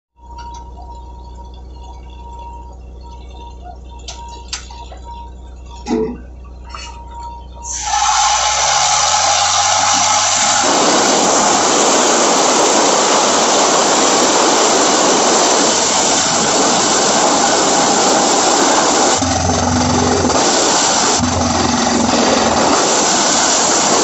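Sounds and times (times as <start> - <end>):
drilling rig rushing noise: 0.2 - 24.0.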